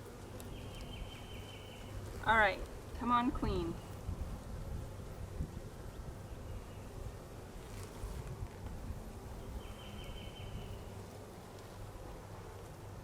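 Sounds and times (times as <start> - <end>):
honeybees buzzing: 0.0 - 13.0
wind rumble: 2.0 - 11.0.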